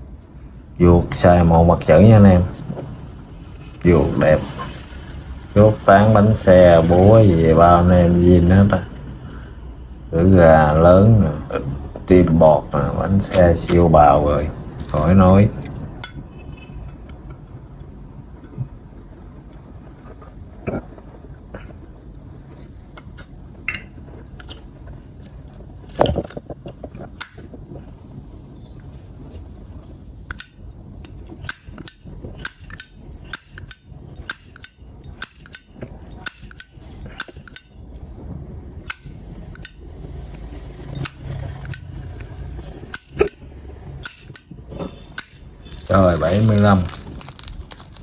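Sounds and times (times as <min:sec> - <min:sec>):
lighter lid clinking open and shut: 0:31.5 - 0:37.8.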